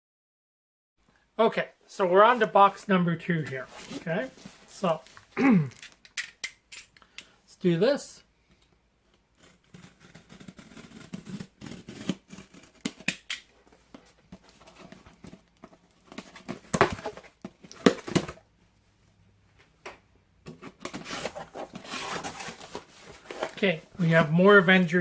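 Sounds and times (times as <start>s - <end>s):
cardboard tearing and rustling: 9.4s - 13.3s, 14.4s - 18.4s, 20.7s - 24.2s.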